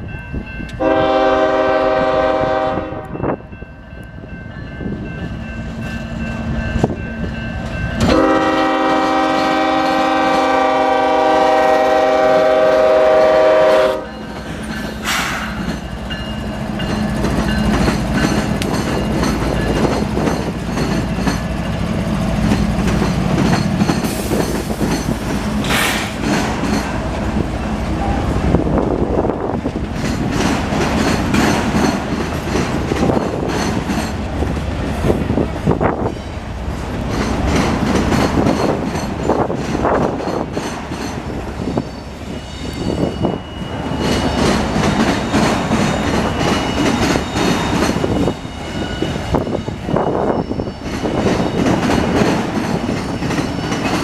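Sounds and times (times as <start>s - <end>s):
freight train rumbling past: 0.0s - 54.0s
locomotive air horn: 0.8s - 3.2s, 8.0s - 14.2s
wheels clicking over rail joints: 14.3s - 28.1s, 28.7s - 35.8s, 36.7s - 41.5s.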